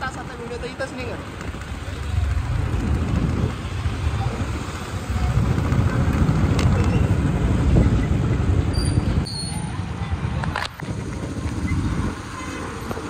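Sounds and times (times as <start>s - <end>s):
loud distorted bass rumble: 2.1s - 9.2s.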